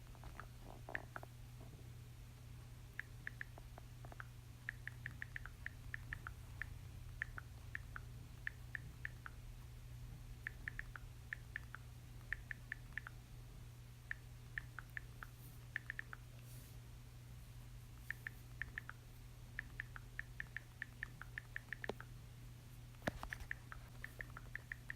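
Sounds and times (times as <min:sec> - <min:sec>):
faint low hum: 0:00.0 - 0:24.9
phone keyboard clicks: 0:03.0 - 0:09.4, 0:23.0 - 0:24.9.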